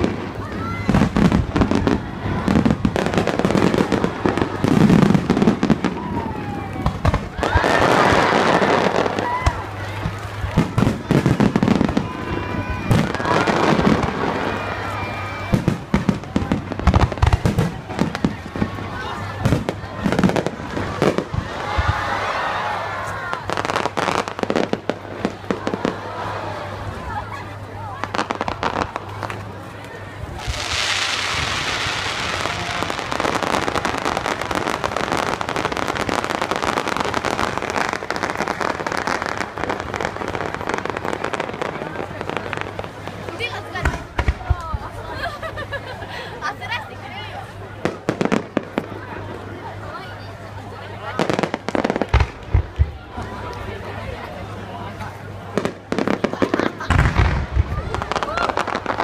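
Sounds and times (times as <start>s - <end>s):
fireworks bangs and pops: 0.0s - 14.6s, 15.5s - 22.1s, 28.0s - 45.0s, 47.8s - 49.0s, 51.2s - 53.6s, 55.5s - 59.0s
fireworks crackling hiss: 28.0s - 44.9s.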